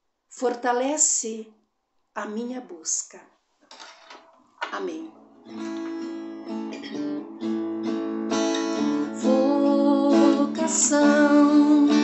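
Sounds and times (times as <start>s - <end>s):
acoustic guitar strumming chords: 5.1s - 12.0s.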